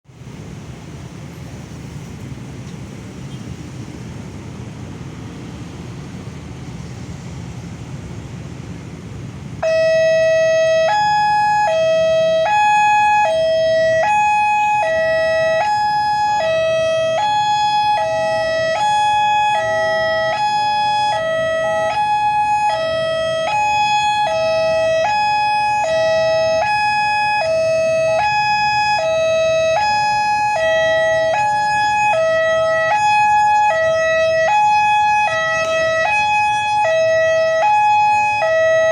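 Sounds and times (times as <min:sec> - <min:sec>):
level crossing alarm two notes: 0:09.6 - 0:38.9.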